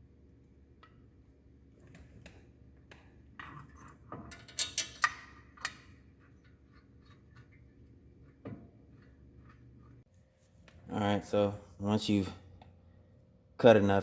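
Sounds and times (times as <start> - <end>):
metal tools and bolts clinking: 3.4 - 6.0.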